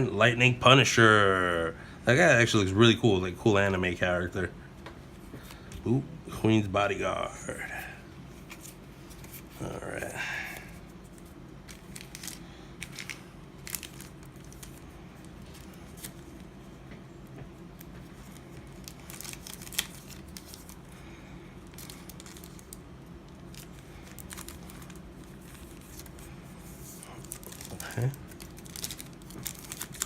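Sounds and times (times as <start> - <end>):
steady low hum: 0.0 - 30.0
foil wrappers crinkling: 7.5 - 30.0.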